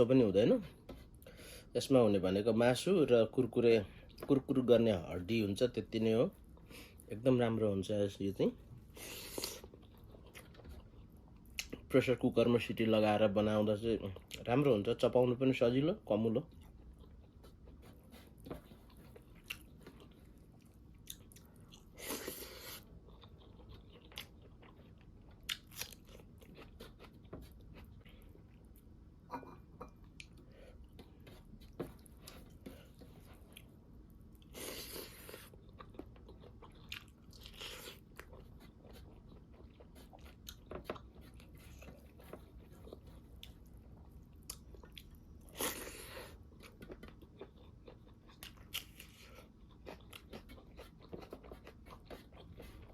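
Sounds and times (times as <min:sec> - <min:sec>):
chewing and crunching: 0:08.5 - 0:11.9, 0:16.3 - 0:29.0, 0:29.8 - 0:52.9.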